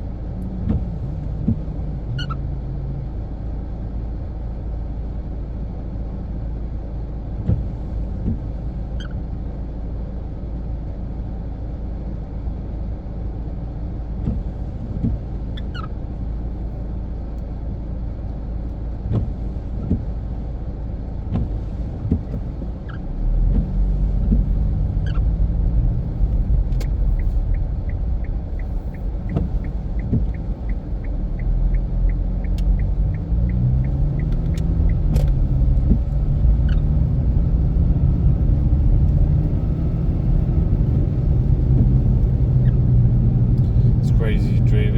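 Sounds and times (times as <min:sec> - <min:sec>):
car engine from inside cabin: 0:00.0 - 0:44.9.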